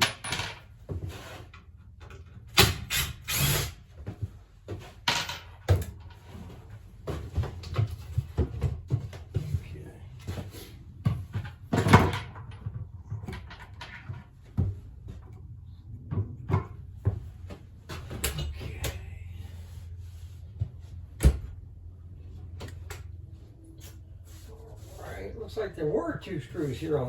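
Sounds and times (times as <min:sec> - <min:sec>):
tools knocking and rattling: 0:00.0 - 0:03.0, 0:04.7 - 0:09.4, 0:11.0 - 0:18.6
steady low hum: 0:05.9 - 0:27.0.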